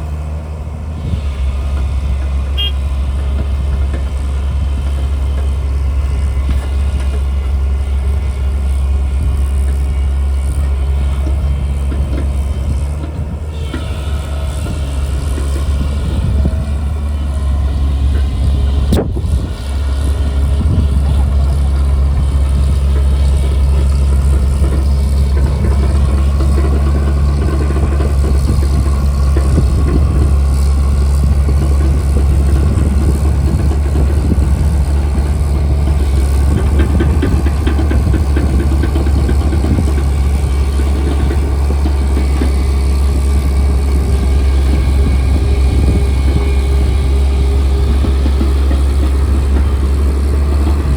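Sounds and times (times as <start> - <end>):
diesel engine droning: 0.0 - 50.9.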